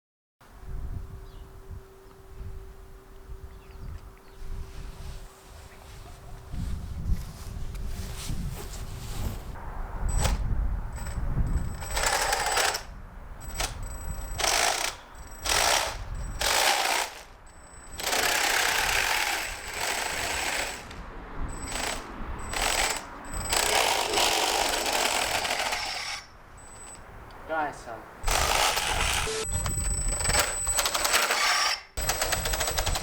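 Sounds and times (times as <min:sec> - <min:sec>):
electric motors whining: 0:11.0 - 0:27.0, 0:28.2 - 0:33.0.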